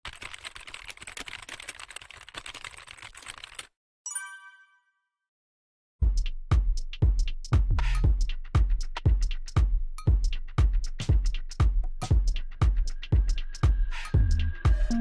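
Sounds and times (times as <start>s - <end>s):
electronic chime: 4.1s - 5.0s
music with heavy beat: 6.0s - 15.0s.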